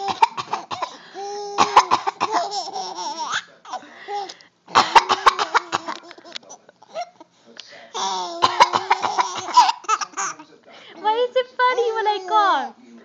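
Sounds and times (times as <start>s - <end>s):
person coughing: 0.0s - 1.0s, 1.6s - 2.6s, 4.8s - 6.0s, 8.0s - 10.2s.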